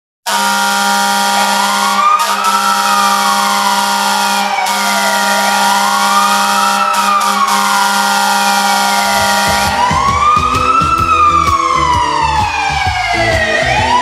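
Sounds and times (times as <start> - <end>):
goal horn chord: 0.2 - 10.5
siren wailing: 0.3 - 14.0.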